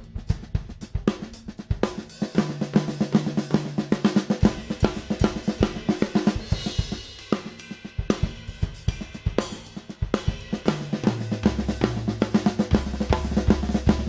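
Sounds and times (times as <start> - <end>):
bass drum: 0.0 - 2.0, 10.1 - 14.0
drum kit groove: 0.0 - 14.0.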